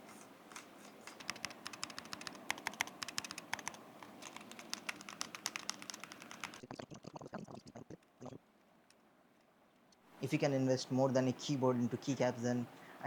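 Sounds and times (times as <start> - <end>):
keyboard keystroke clicks: 0.5 - 6.6.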